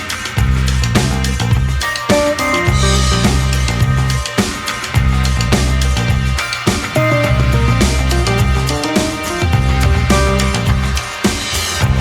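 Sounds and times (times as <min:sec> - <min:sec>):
upbeat instrumental music: 0:00.0 - 0:12.0.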